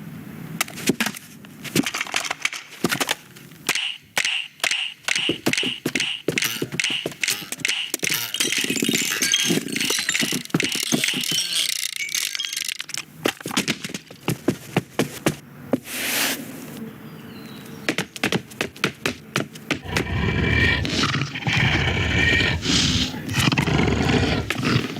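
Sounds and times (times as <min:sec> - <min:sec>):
loud low roar: 0:19.8 - 0:24.9.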